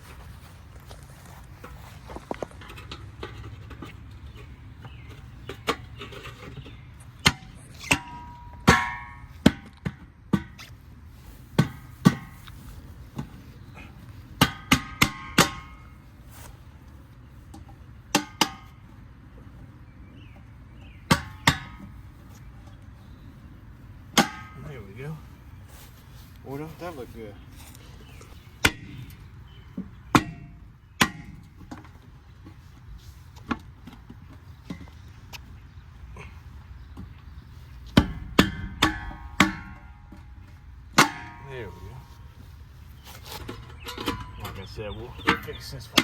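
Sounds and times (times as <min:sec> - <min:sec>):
hubcaps knocked onto wheels: 0:00.0 - 0:10.8, 0:14.4 - 0:16.1, 0:17.5 - 0:19.0, 0:20.3 - 0:22.4, 0:24.0 - 0:25.0, 0:36.9 - 0:42.5, 0:43.1 - 0:46.0.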